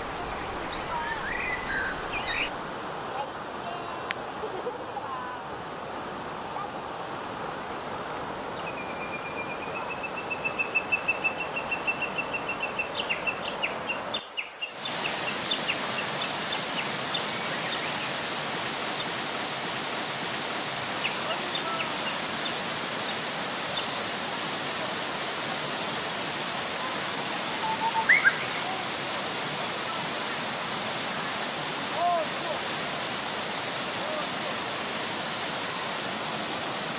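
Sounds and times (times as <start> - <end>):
stream water rushing: 0.0 - 36.9
bird trilling and chirping: 1.2 - 2.5.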